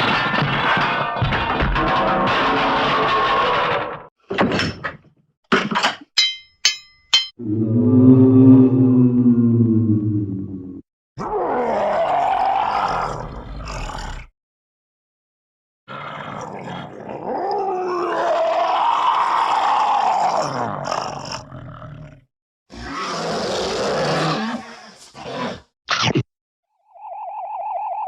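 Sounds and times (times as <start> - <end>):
cartoon roars: 7.4 - 14.3, 15.9 - 25.6.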